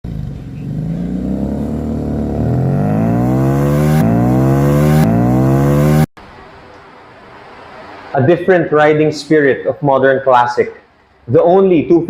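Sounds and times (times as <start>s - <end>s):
motorcycle engine accelerating: 0.0s - 6.1s.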